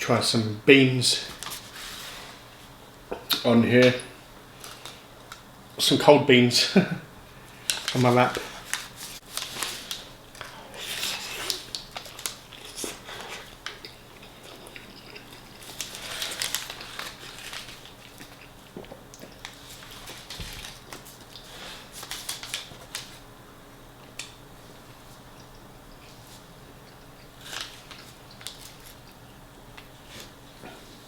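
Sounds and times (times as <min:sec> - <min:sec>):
wrapper paper crinkling: 0:01.3 - 0:01.9, 0:07.6 - 0:13.8, 0:15.6 - 0:18.4, 0:19.4 - 0:23.2, 0:27.4 - 0:29.0
biting and chewing wrap: 0:07.7 - 0:23.2, 0:26.9 - 0:29.2.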